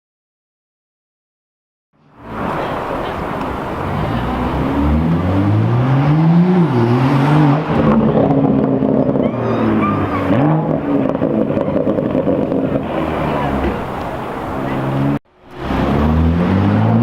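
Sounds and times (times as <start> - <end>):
car engine revving: 2.2 - 17.0.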